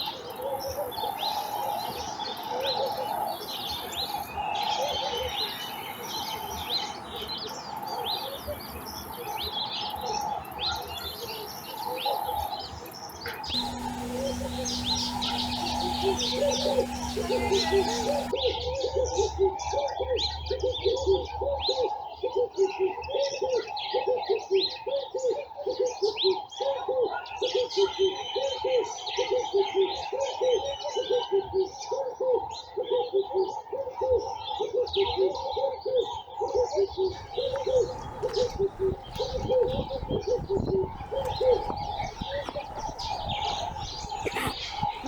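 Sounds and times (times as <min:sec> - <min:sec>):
small birds chirping: 0:13.4 - 0:18.4, 0:37.1 - 0:45.0
dove cooing: 0:13.5 - 0:18.3, 0:37.1 - 0:45.0
high drone: 0:13.5 - 0:18.4.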